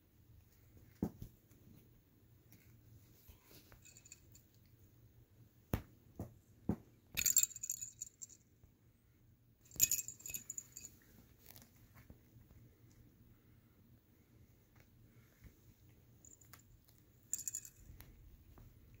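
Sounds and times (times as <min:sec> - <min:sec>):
light metallic jingling: 0:03.6 - 0:04.7, 0:07.2 - 0:08.4, 0:09.7 - 0:11.6, 0:16.2 - 0:18.2.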